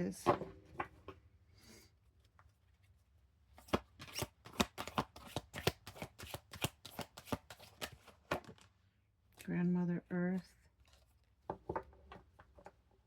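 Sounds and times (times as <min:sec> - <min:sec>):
cards being shuffled: 0:03.5 - 0:08.7.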